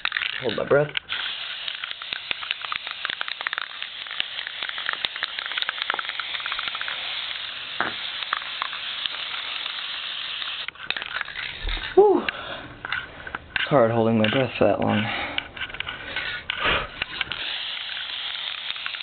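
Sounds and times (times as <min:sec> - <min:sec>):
spray paint can hissing: 0:00.0 - 0:12.0, 0:16.5 - 0:19.0.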